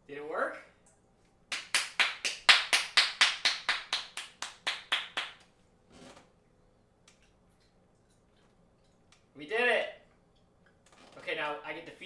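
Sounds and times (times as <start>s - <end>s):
hands clapping: 1.5s - 5.5s.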